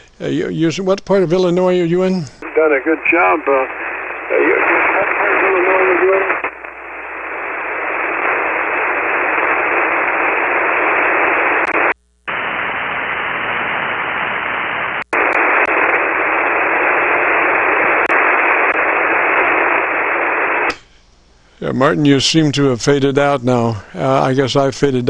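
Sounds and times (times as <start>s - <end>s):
radio static hiss: 0.0s - 25.0s
radio click: 1.6s - 12.5s, 15.0s - 16.8s, 17.4s - 21.0s.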